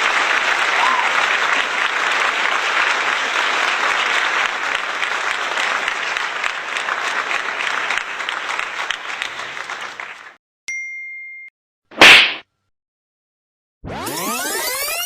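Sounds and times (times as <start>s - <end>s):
crowd applauding: 0.0s - 10.4s.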